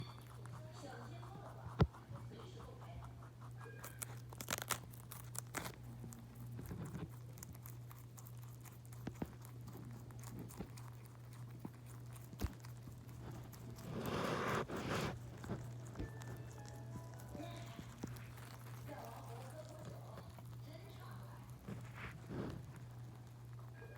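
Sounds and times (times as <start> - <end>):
low steady hum: 0.0 - 23.9
crunchy food being munched: 3.8 - 16.8, 17.6 - 20.6.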